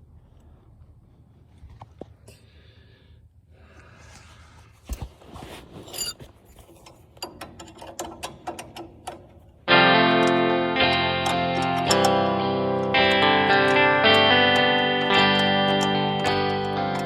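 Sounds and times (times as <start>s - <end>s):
handling of metal parts: 5.7s - 9.6s.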